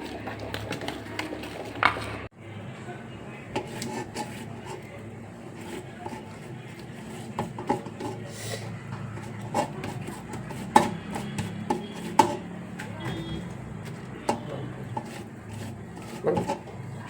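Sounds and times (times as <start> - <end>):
utensils knocking against a bowl: 5.6 - 17.0.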